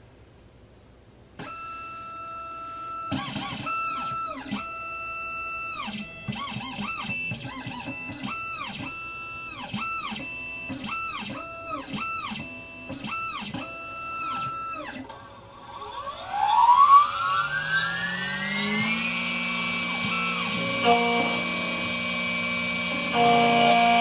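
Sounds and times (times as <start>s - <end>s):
cutter motor whine: 1.4s - 24.0s
stepper motors whining: 10.9s - 24.0s.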